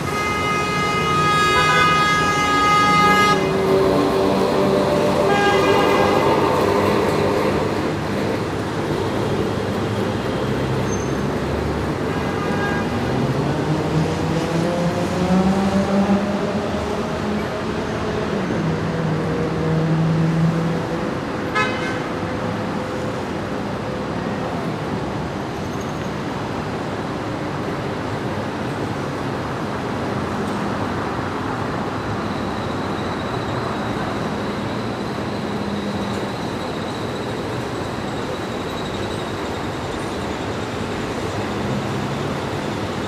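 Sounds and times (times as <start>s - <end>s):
car horn: 0.0s - 8.0s, 12.1s - 13.2s, 21.5s - 22.2s
street traffic rumble: 0.0s - 43.0s.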